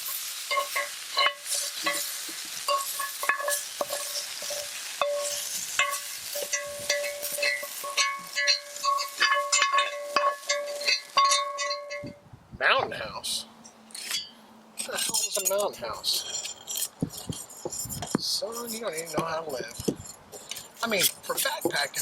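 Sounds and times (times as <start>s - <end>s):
vegetables sizzling in skillet: 0.0s - 11.6s
utensil scraping a pan: 0.0s - 12.1s, 13.9s - 22.0s
pan ringing: 5.0s - 12.2s.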